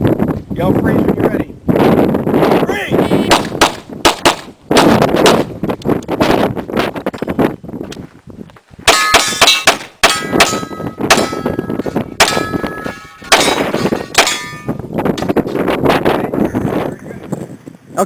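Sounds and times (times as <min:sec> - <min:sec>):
pistol shots: 0:03.3 - 0:05.4, 0:08.9 - 0:11.6, 0:12.2 - 0:14.5
steel targets ringing: 0:08.9 - 0:14.8.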